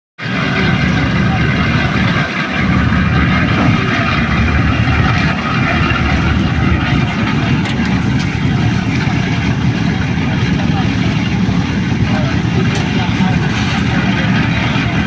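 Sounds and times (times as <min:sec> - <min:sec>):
engine running steadily: 0:00.2 - 0:15.0.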